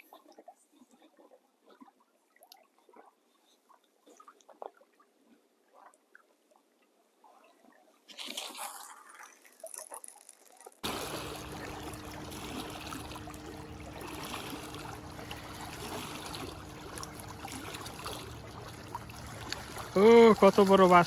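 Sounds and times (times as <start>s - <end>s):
lake water trickling and lapping: 0.0s - 21.0s
faint low hum: 10.8s - 21.0s
steady noise: 10.8s - 21.0s.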